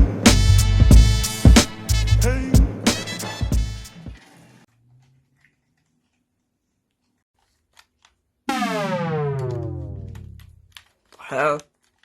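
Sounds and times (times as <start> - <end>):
music: 0.0 - 4.3
electronic power-down tone: 8.5 - 10.4.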